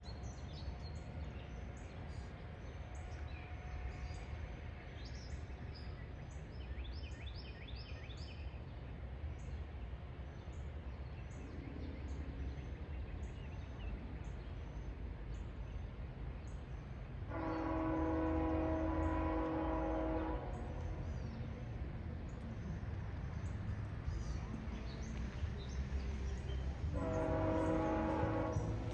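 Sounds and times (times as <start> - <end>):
locomotive air horn blast: 17.3 - 21.0, 26.9 - 28.9.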